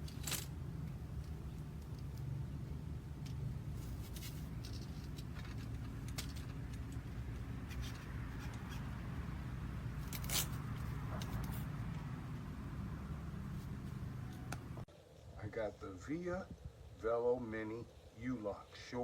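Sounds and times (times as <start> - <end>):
light clicks and rustles: 3.2 - 9.1.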